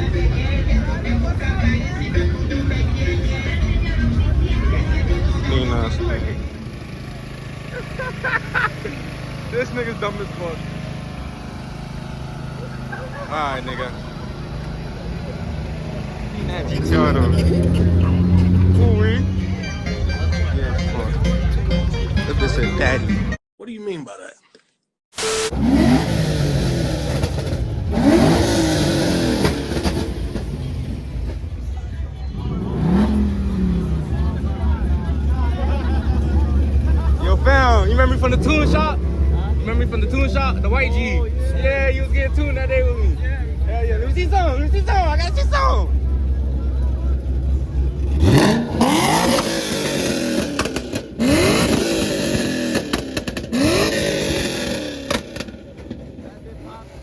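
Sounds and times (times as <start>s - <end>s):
car engine revving: 0.0s - 19.7s, 25.3s - 57.0s
exhaust pops and crackles: 48.2s - 56.5s.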